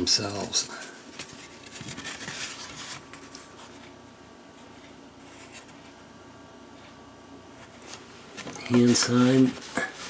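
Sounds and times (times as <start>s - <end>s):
paper rustling: 0.2s - 4.0s, 4.6s - 5.9s, 7.6s - 10.0s.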